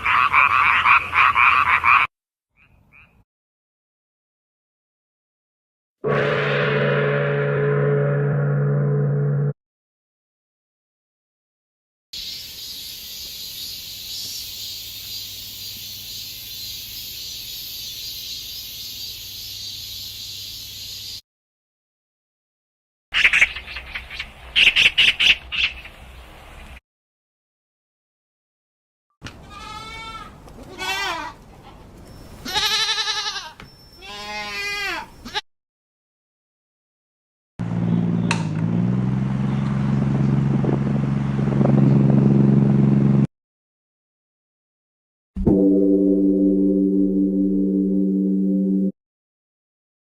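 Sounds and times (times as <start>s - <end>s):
cicadas buzzing: 12.2s - 21.2s
person imitating goat bleats: 32.5s - 35.4s.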